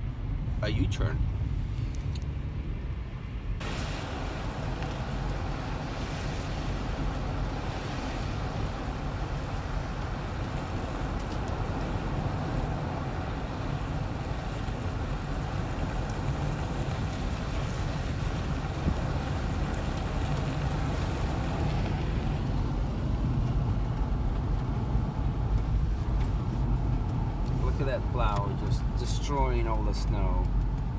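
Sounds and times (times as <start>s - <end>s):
car road noise on snow: 0.0s - 30.9s.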